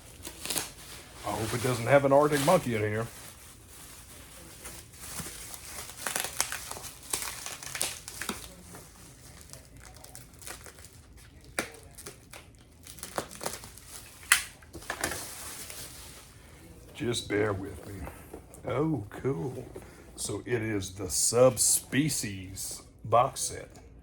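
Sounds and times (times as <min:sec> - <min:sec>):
paper packing crumpling: 0:00.0 - 0:18.1.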